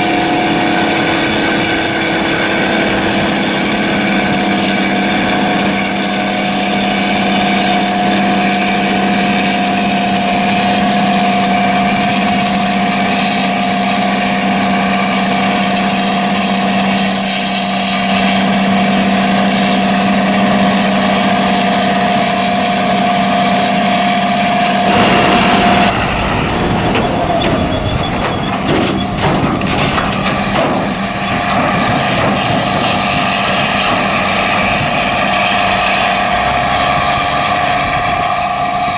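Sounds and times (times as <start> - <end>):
heavy farm machinery droning: 0.0 - 38.9
brief rush of noise: 24.9 - 28.6.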